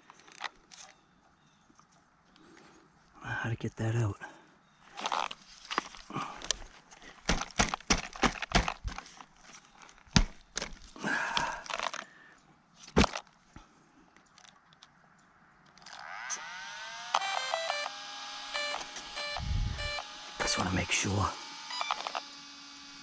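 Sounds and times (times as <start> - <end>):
short scraping rustle: 4.8 - 7.3
tool clicking on rock: 5.0 - 12.1.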